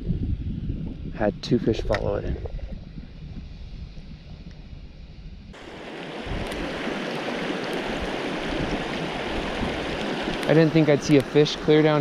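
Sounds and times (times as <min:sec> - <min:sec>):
wind rumble on microphone: 0:00.0 - 0:12.0
stream water flowing: 0:05.6 - 0:12.0.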